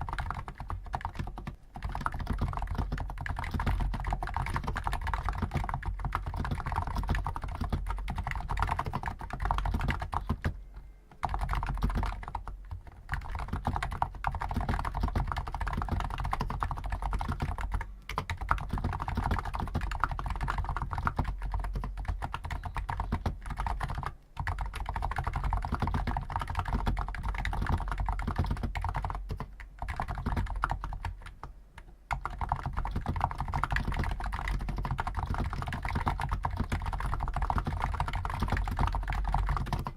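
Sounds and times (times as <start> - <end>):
keyboard typing: 0.0 - 39.9.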